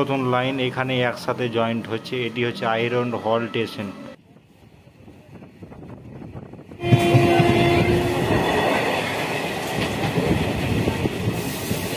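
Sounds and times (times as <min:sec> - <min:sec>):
train wheels rumbling on track: 0:04.2 - 0:11.9
train horn: 0:06.7 - 0:08.8.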